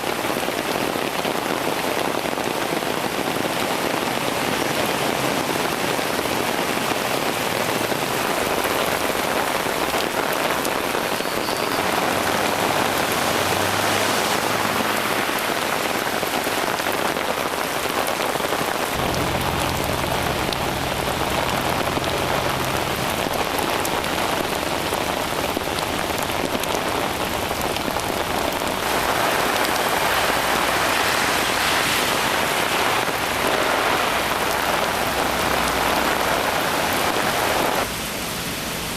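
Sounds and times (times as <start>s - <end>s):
heavy rain falling: 0.0s - 38.9s
low rumble: 18.9s - 28.8s.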